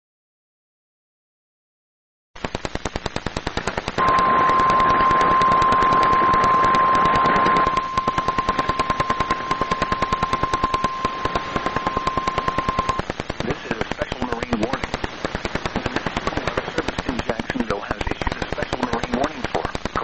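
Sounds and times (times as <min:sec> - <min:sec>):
radio static crackling: 0:02.4 - 0:20.0
steady alarm tone: 0:04.0 - 0:13.0.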